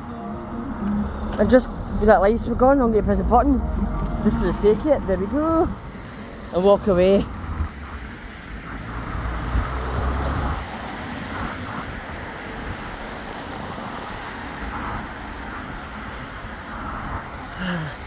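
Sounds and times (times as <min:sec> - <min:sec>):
road traffic: 0:01.3 - 0:02.6, 0:03.6 - 0:11.4.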